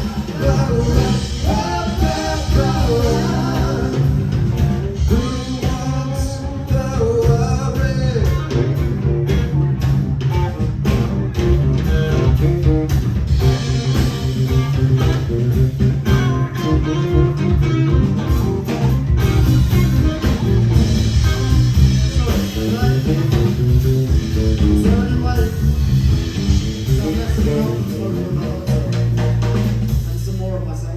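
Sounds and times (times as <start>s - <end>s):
live blues-rock band playing: 0.0s - 30.8s
bending guitar lines: 8.0s - 30.2s.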